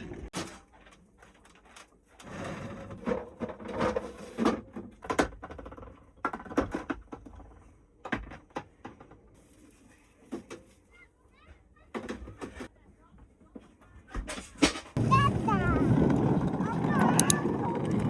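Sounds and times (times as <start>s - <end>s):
clicks and clattering of objects: 0.3s - 2.3s, 3.0s - 10.9s, 16.1s - 18.0s.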